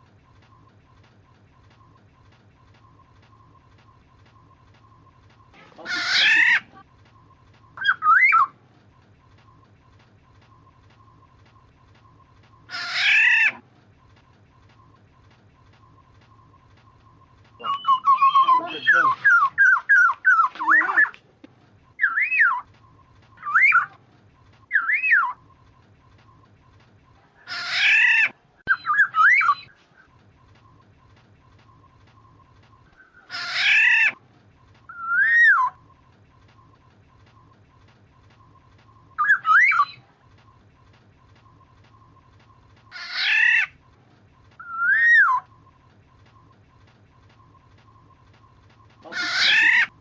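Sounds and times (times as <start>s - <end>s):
bird harsh rasping call: 5.6s - 6.8s, 12.7s - 13.6s, 17.6s - 21.1s, 27.4s - 29.7s, 33.1s - 34.2s, 42.9s - 43.8s, 49.1s - 49.9s
bird fluted whistle: 7.7s - 8.6s, 15.9s - 21.2s, 22.0s - 24.0s, 24.7s - 25.6s, 27.8s - 30.1s, 34.9s - 36.0s, 38.4s - 40.1s, 44.6s - 45.8s
harsh nasal bird call: 49.0s - 50.0s.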